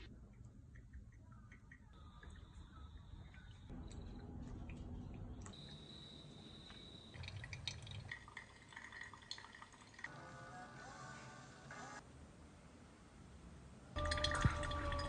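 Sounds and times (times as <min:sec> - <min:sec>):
coffee dripping and trickling: 0:00.2 - 0:10.2, 0:14.0 - 0:15.0
low rumble: 0:02.0 - 0:05.6.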